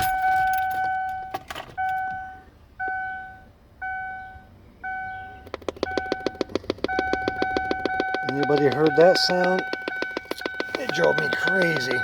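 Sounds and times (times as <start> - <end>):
electronic beeps: 4.2 - 12.0
rapid popping clicks from speaker: 5.4 - 12.0.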